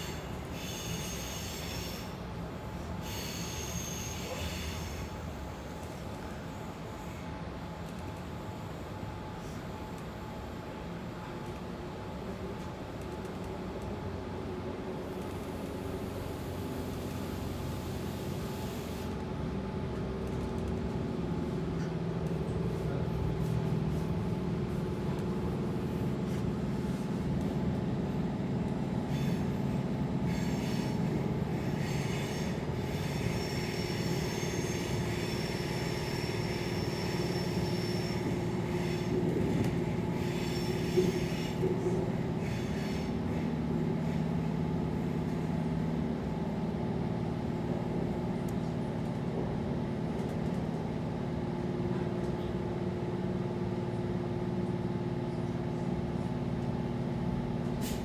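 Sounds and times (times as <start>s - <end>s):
train rumble with humming motor: 0.0s - 58.0s
high wheel squeal: 31.7s - 39.1s.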